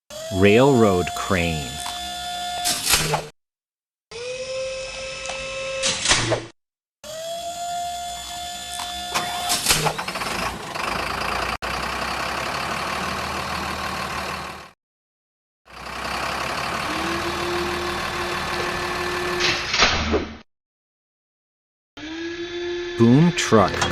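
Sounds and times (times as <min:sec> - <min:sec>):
engine running: 0:10.0 - 0:14.7, 0:15.7 - 0:19.4
motor whine rising: 0:22.0 - 0:23.2.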